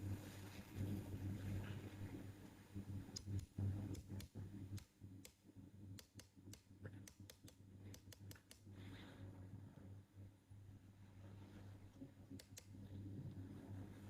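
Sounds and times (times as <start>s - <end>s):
low steady hum: 0.0s - 14.0s
small parts and tools clicking: 6.0s - 8.7s.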